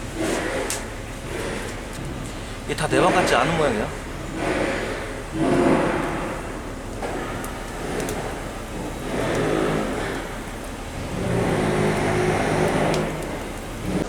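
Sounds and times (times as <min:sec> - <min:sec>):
vehicle engine running: 0:00.0 - 0:14.0
faint clicks: 0:04.0 - 0:14.0.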